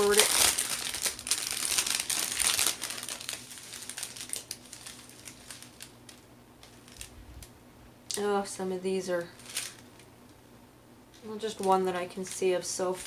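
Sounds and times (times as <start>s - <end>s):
plastic baggies crinkling: 0.0s - 7.5s, 9.2s - 10.1s, 11.3s - 13.0s.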